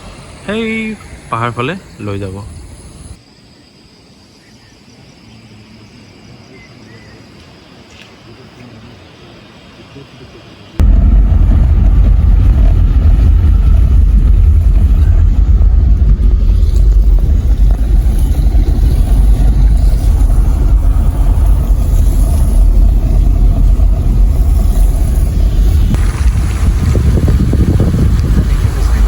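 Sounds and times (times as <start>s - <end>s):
road noise: 0.0s - 3.2s, 10.8s - 29.0s
car engine: 10.8s - 29.0s
wind on microphone: 10.8s - 29.0s.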